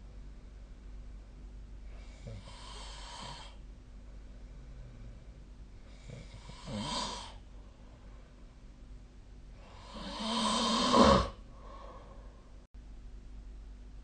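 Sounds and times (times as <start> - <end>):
person snoring: 2.0 - 3.6, 5.9 - 7.4, 9.6 - 12.2.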